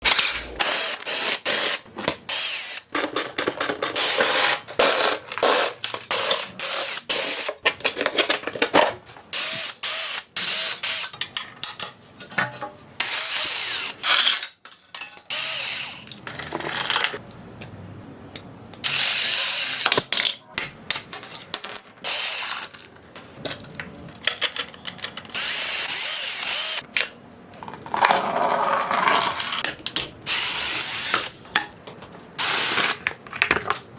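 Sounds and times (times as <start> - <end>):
metal parts clattering: 21.1 - 25.4.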